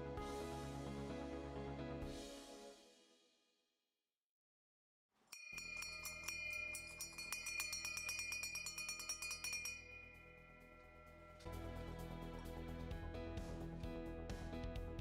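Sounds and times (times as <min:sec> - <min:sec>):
small bell rung rapidly: 0:05.3 - 0:11.5.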